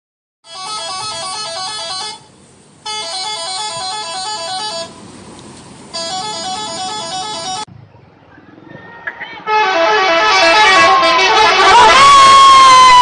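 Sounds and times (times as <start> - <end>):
multi-tone musical bus horn: 0.4 - 5.0, 5.9 - 7.7, 9.4 - 13.0
low engine rumble: 0.5 - 11.2.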